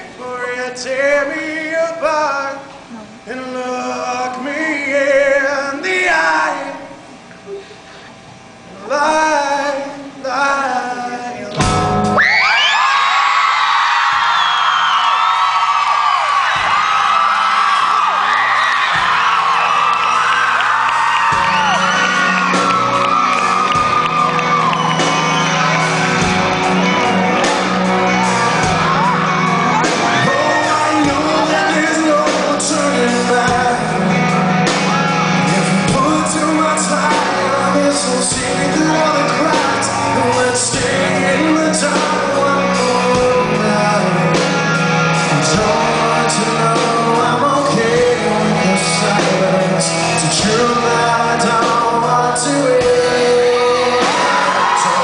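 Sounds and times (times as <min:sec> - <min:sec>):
live rock band playing: 0:11.4 - 0:55.0
person singing: 0:21.4 - 0:55.0.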